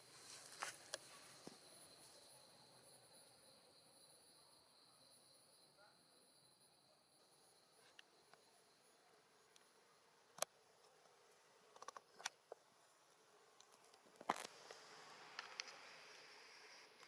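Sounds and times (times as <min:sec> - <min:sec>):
light hiss: 0:07.3 - 0:17.0.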